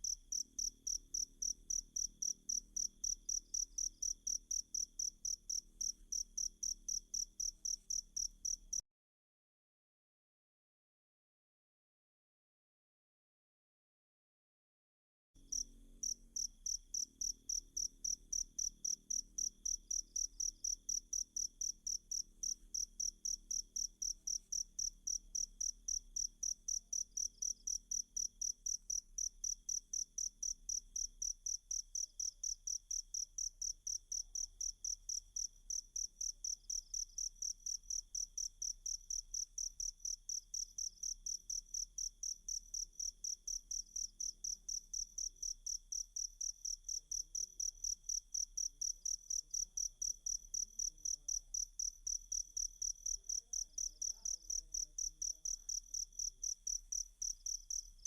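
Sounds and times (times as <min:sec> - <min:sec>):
cricket chirping: 0:00.0 - 0:08.8, 0:15.4 - 0:58.0.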